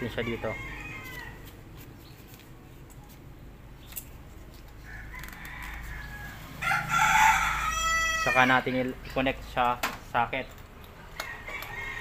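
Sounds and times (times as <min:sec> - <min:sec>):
rooster crowing: 0:00.0 - 0:01.5, 0:04.8 - 0:08.7, 0:11.2 - 0:12.0.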